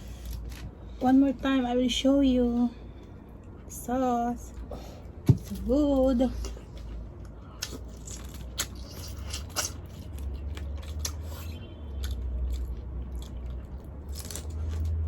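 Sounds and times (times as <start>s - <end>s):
low steady hum: 0.0s - 15.0s
chewing: 6.4s - 15.0s
crab shell cracking and crunching: 7.6s - 11.2s, 12.5s - 15.0s.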